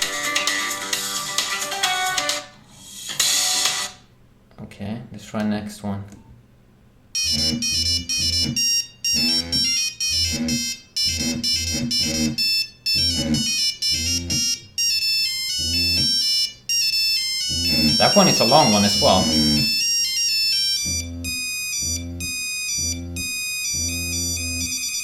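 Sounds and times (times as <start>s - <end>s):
mobile phone ringtone: 7.2s - 25.0s.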